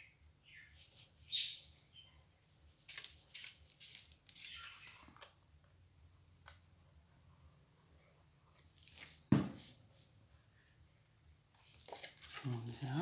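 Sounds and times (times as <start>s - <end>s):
paper rustles and scrapes: 2.8s - 5.2s, 11.6s - 13.0s.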